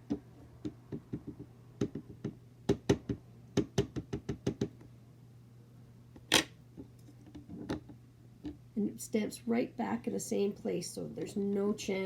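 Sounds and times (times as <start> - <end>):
ink pad tapping on rubber stamp: 0.1 - 4.8.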